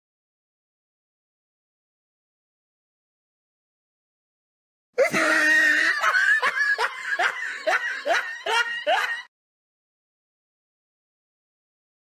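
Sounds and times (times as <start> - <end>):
person laughing: 5.0 - 9.3.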